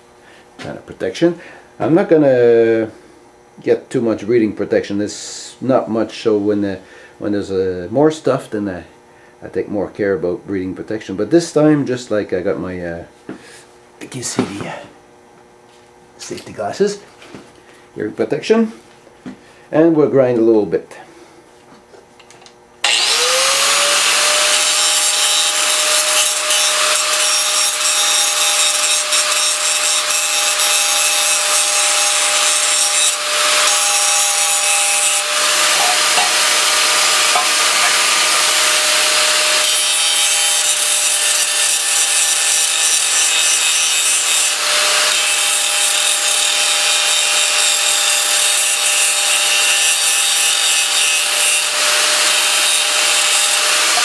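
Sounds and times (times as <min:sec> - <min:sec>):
electric grinder grinding steel: 0:22.8 - 0:54.0.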